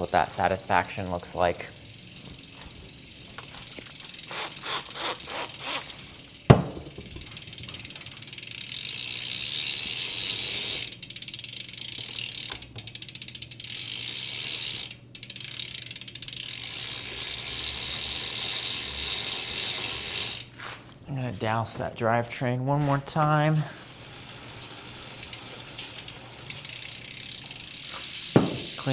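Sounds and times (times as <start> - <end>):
freewheel ratchet clicking: 0.0 - 20.5, 23.9 - 28.9
sharp knock: 28.4 - 28.8.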